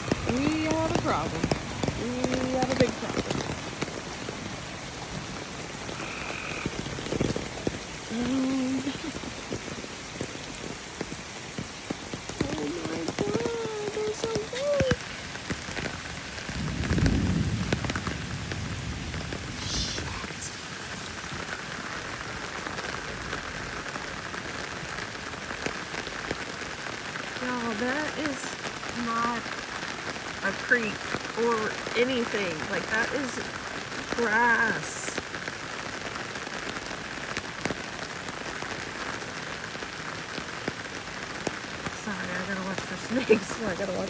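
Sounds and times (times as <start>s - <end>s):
steady rain pattering: 0.0s - 44.0s
frog croaking: 5.8s - 9.1s.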